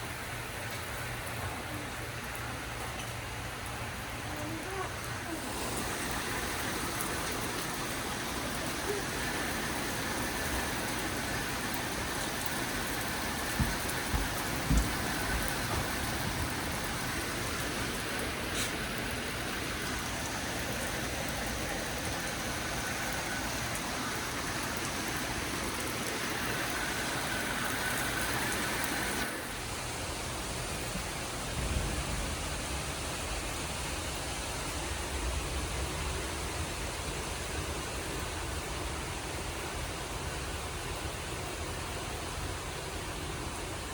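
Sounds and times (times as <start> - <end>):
heavy rain hissing: 0.0 - 43.9
low thumps: 13.5 - 17.0.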